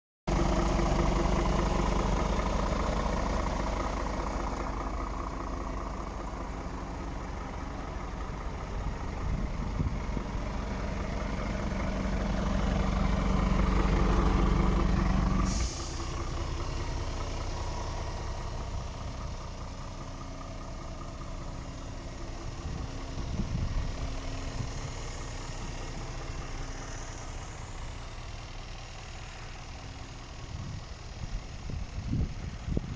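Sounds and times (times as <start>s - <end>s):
diesel truck engine idling: 0.3s - 32.9s
air hiss: 15.3s - 16.4s.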